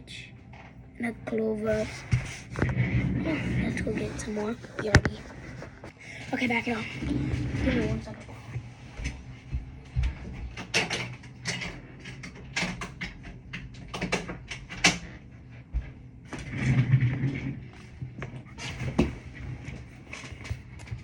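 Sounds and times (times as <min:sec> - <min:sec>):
low rumble of movement: 0:00.0 - 0:21.0.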